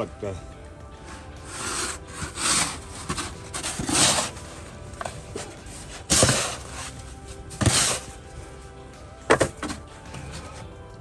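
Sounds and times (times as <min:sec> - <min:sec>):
background music: 0:00.0 - 0:11.0
snow being scraped: 0:01.4 - 0:04.6, 0:05.6 - 0:08.2.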